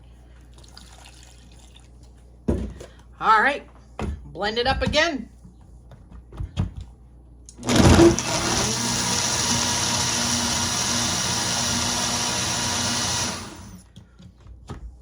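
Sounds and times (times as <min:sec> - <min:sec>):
blender motor running: 0:07.5 - 0:13.8.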